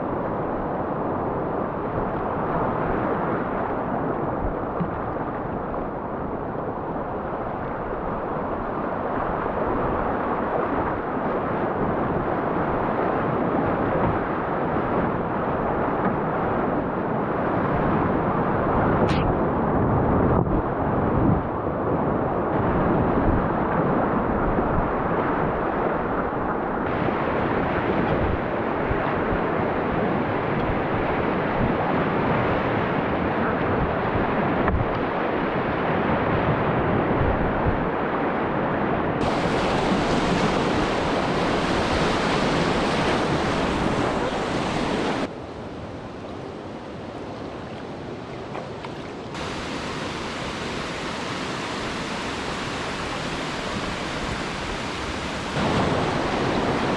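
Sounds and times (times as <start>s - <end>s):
rushing whitewater rapids: 39.2s - 56.9s.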